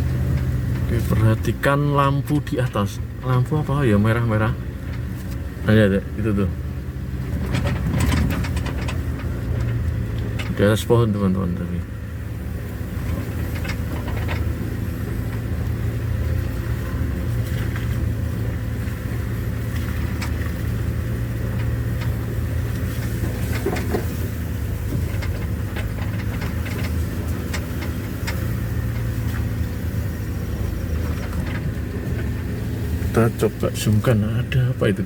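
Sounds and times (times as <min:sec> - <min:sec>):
vehicle engine and road noise: 0:00.0 - 0:35.0
light clicks and rattles: 0:07.2 - 0:11.8, 0:12.6 - 0:35.0.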